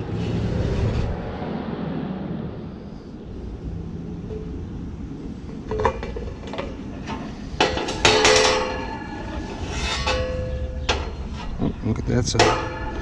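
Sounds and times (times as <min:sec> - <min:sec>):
metal parts clanking on sheet metal: 0:05.6 - 0:13.0.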